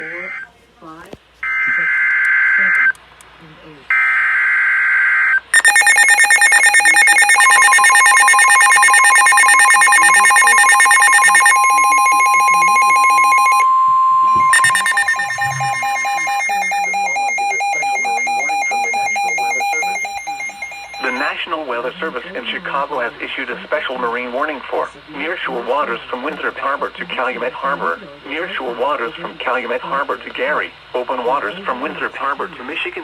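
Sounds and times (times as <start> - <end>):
warbling digital data burst: 5.6 - 13.6, 14.3 - 21.2
pulsing electronic beeps: 5.6 - 21.3
steady warning tone: 5.6 - 21.3.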